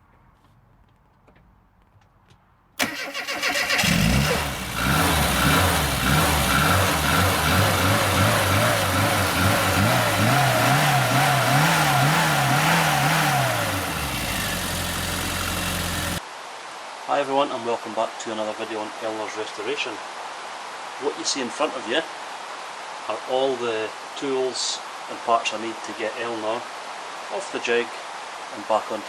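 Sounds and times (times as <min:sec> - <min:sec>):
car engine revving: 0:02.8 - 0:16.2.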